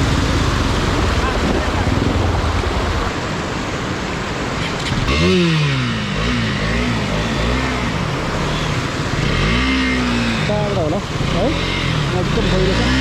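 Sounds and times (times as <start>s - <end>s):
water rushing: 0.0s - 13.0s
motorcycle engine revving: 4.7s - 13.0s.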